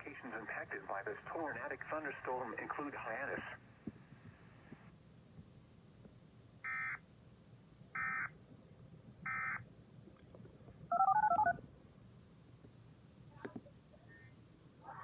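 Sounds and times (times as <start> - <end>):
two-tone keypad beeps: 10.9 - 11.6.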